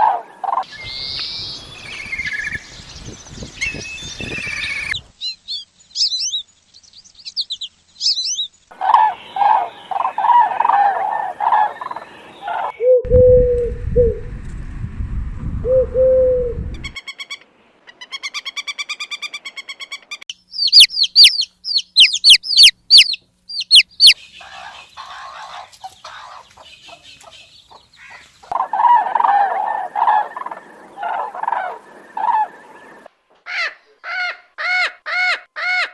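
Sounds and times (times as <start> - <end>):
high falling bird calls: 0.0 - 14.2, 15.7 - 35.9
hens clucking: 8.7 - 12.7, 22.0 - 33.1
turkey gobbling: 8.8 - 13.0, 20.6 - 33.0
crow cawing: 33.5 - 35.9.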